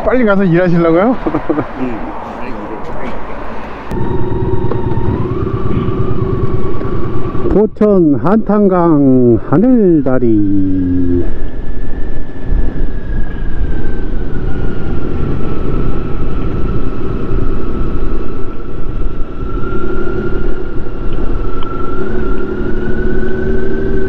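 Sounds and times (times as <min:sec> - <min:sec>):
motorcycle engine running: 0:04.0 - 0:07.6.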